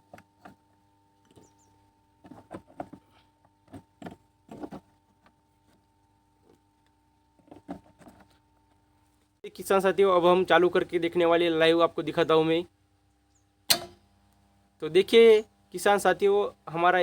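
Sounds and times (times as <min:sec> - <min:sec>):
faint steady hum: 0:00.0 - 0:17.0
fuse carriers clicking into holders: 0:13.7 - 0:14.0.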